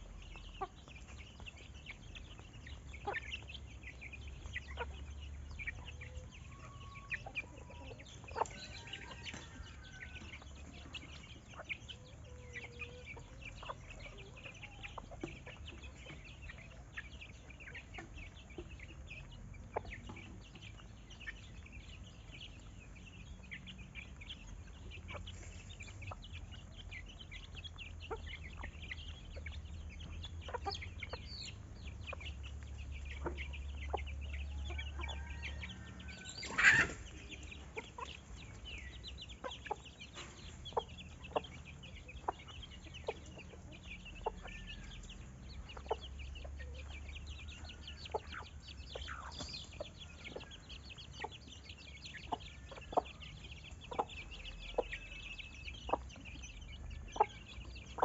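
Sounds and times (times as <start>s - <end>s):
chickens clucking: 0.0s - 58.0s
chicks chirping: 0.0s - 58.0s
loud chicken call: 34.9s - 37.3s.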